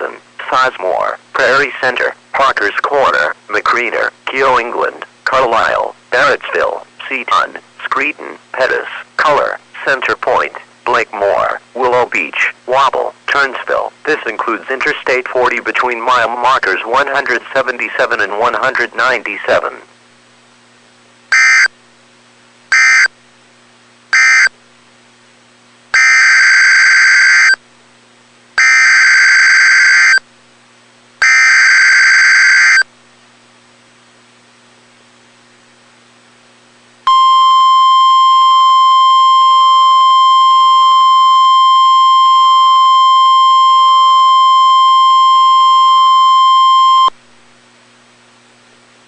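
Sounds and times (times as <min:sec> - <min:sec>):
steady alarm tone: 0:21.3 - 0:21.7, 0:22.7 - 0:23.1, 0:24.2 - 0:24.5, 0:26.0 - 0:27.6, 0:28.6 - 0:30.2, 0:31.2 - 0:32.8, 0:37.1 - 0:47.1
buzzing data bursts: 0:28.6 - 0:30.2.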